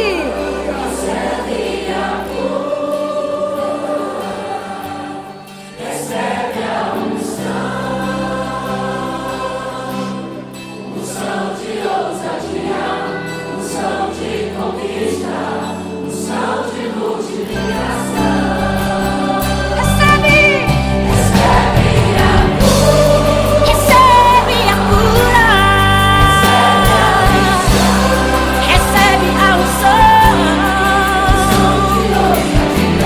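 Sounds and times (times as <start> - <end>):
gospel singing: 0.0 - 33.0
instrumental backing with bass: 17.6 - 33.0.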